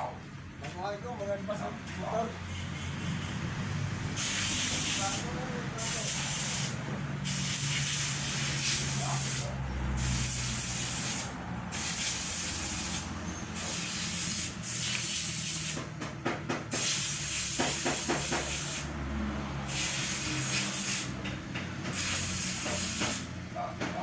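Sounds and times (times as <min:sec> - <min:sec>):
loud hiss: 0:04.2 - 0:15.8, 0:16.7 - 0:18.9, 0:19.7 - 0:21.2, 0:22.0 - 0:23.3.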